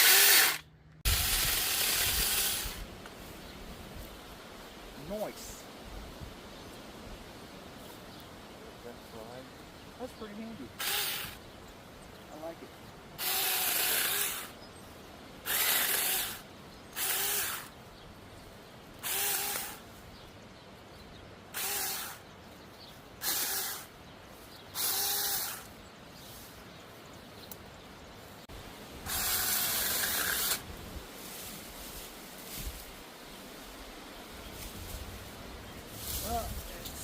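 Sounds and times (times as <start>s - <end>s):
small chainsaw motor whining: 0.0s - 2.8s, 10.8s - 11.4s, 13.2s - 14.6s, 15.5s - 16.4s, 17.0s - 17.8s, 19.0s - 19.8s, 21.6s - 22.2s, 23.2s - 23.9s, 24.8s - 25.7s, 29.0s - 30.6s.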